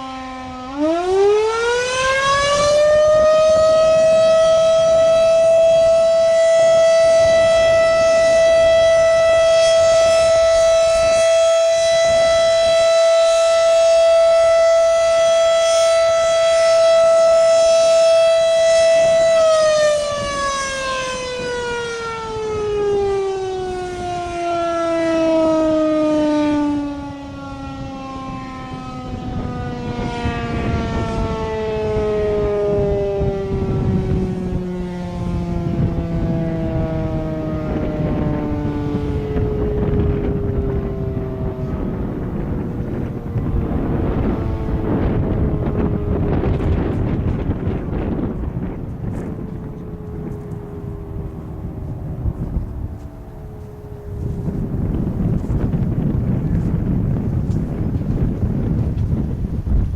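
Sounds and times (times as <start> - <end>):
siren wailing: 0.0 - 59.9.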